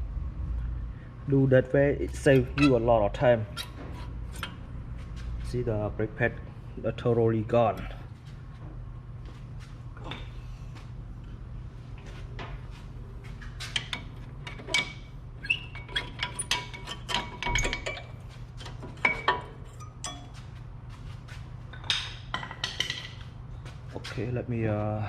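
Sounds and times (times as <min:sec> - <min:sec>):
steady low hum: 0:00.0 - 0:25.0
metal tools clinking: 0:02.2 - 0:04.6, 0:13.7 - 0:20.4.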